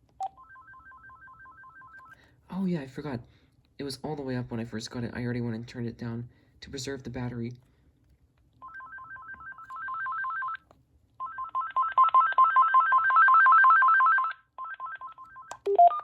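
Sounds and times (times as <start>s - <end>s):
phone ringtone warble: 0.2s - 2.2s, 8.6s - 10.6s, 11.2s - 16.0s.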